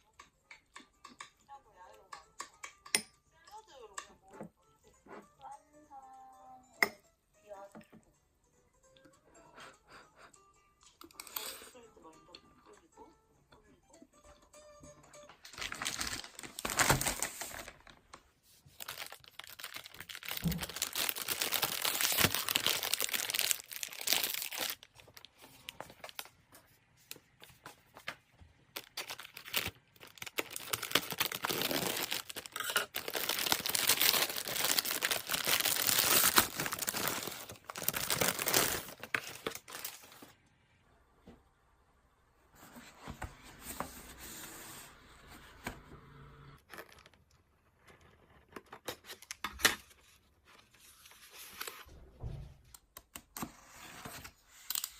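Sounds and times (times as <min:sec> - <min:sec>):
packaging crinkling and rustling: 0:15.4 - 0:40.4.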